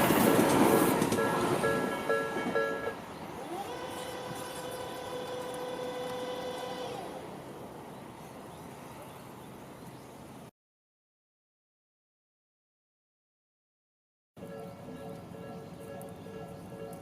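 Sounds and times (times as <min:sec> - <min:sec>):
train passing with whine: 0:00.0 - 0:08.5
low train rumble: 0:00.0 - 0:10.5, 0:14.4 - 0:17.0.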